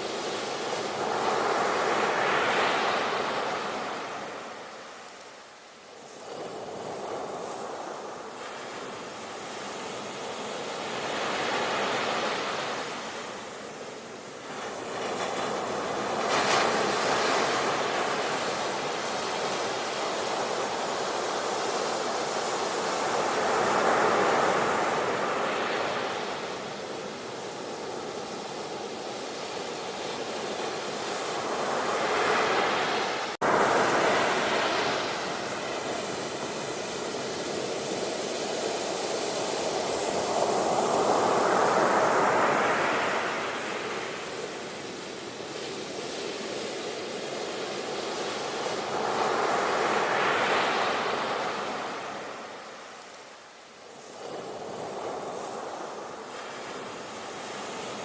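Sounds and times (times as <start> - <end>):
sea waves washing onto shore: 0.0 - 58.0.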